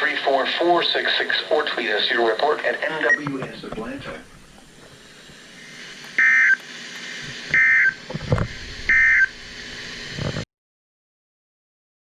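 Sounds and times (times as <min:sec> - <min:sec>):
radio signal hiss: 0:00.0 - 0:10.4
buzzy data bursts: 0:07.2 - 0:10.4.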